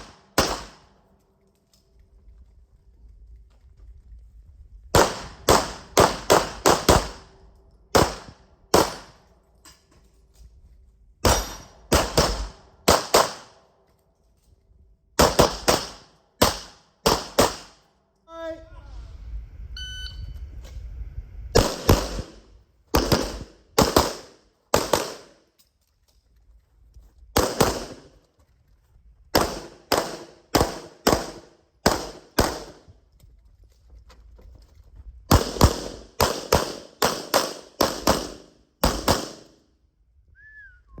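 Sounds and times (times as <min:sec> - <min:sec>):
pistol shots: 0:00.0 - 0:01.0, 0:04.9 - 0:09.2, 0:11.2 - 0:13.6, 0:15.2 - 0:17.9, 0:21.6 - 0:25.4, 0:27.4 - 0:28.2, 0:29.3 - 0:32.9, 0:35.3 - 0:39.6.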